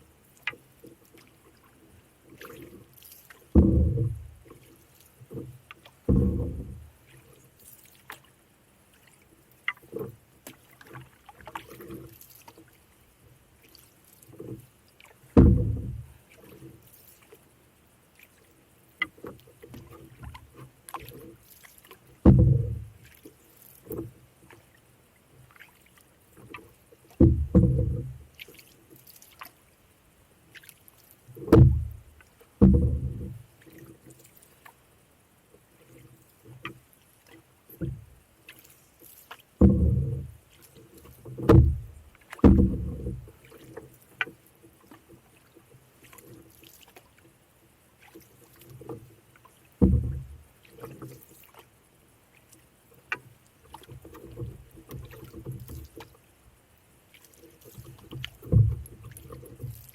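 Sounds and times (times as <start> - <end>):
paddle strokes in water: 0.0 - 59.9
dull thumps: 3.6 - 4.3, 6.1 - 6.8, 15.4 - 16.1, 22.2 - 22.9, 27.2 - 28.2, 31.4 - 32.0, 32.6 - 33.4, 39.6 - 40.3, 41.4 - 43.3, 49.8 - 50.4, 58.4 - 59.0.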